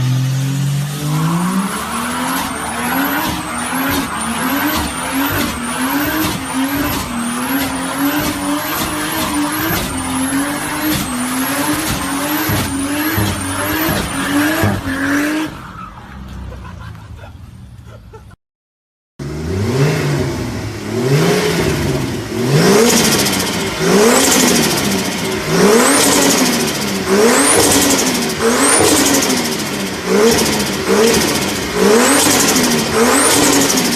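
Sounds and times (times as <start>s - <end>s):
car engine revving: 0.0s - 16.8s, 19.2s - 33.9s
turbo whistle: 1.0s - 15.2s.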